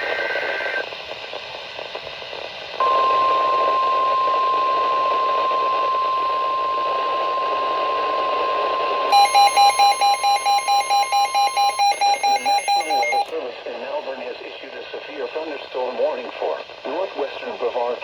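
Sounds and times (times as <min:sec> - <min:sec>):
radio hiss: 0:00.0 - 0:09.1, 0:11.1 - 0:18.0
steady high alarm tone: 0:02.8 - 0:13.3
electronic alarm beeping rapidly: 0:05.2 - 0:13.3.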